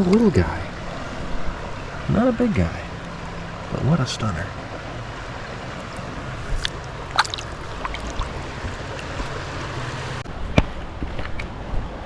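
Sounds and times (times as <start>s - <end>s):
river water flowing: 4.6s - 10.2s
water splashes: 5.6s - 10.2s.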